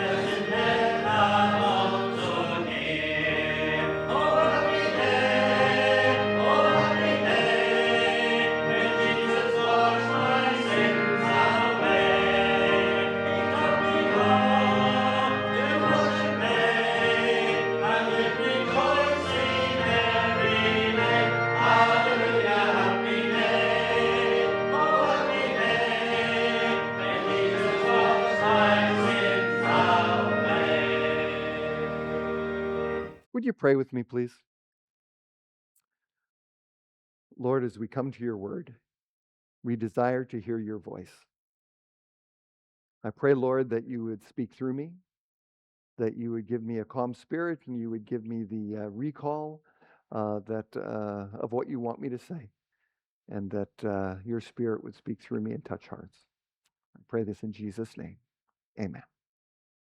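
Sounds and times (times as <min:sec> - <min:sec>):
choir singing a hymn: 0:00.0 - 0:33.2
sustained instrumental accompaniment: 0:00.0 - 0:33.2.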